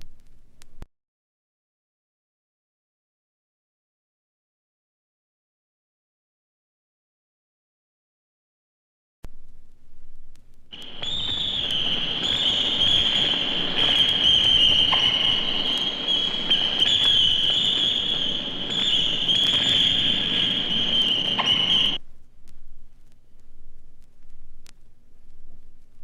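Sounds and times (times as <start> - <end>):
crackling hiss: 10.3 - 26.0
high steady whistling tone: 10.7 - 22.0.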